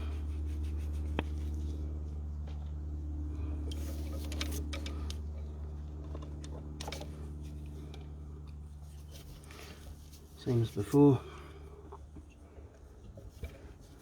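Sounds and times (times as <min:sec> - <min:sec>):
steady low hum: 0:00.0 - 0:14.0
clicks of small engine parts: 0:03.7 - 0:05.2, 0:06.0 - 0:08.6.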